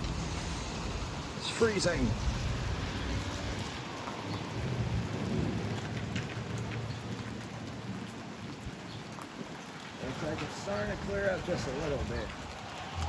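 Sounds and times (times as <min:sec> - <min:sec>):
wind gusting against microphone: 0:00.0 - 0:06.0, 0:10.0 - 0:13.0
rain falling: 0:00.0 - 0:13.0.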